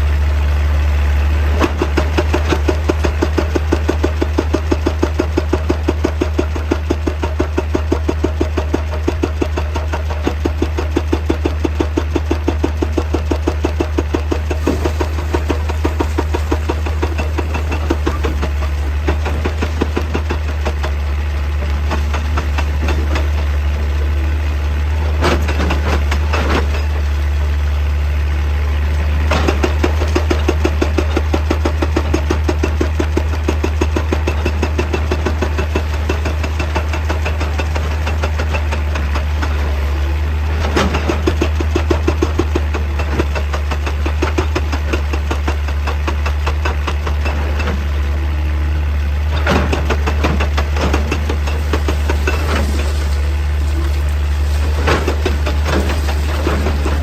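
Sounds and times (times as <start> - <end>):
excavator diesel engine droning: 0.0 - 57.0.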